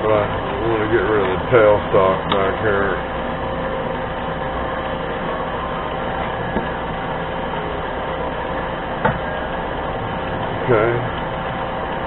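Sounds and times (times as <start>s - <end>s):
lathe motor humming: 0.0s - 12.0s.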